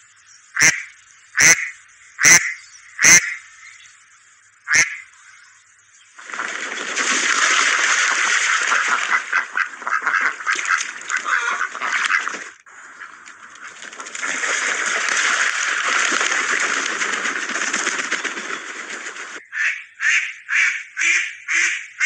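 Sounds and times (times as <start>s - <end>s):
flock of ducks quacking: 0.6s - 3.5s, 4.7s - 5.1s, 8.7s - 13.8s, 18.2s - 22.0s.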